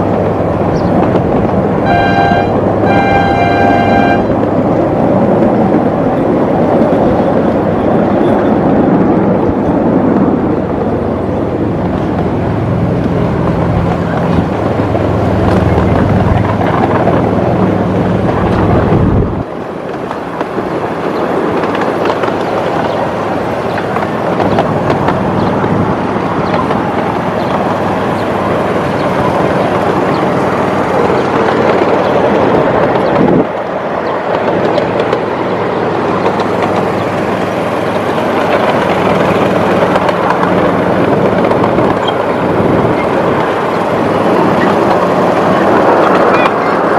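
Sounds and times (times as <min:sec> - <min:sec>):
low engine hum: 0:00.0 - 0:20.6
wheels rumbling on rail: 0:00.0 - 0:46.9.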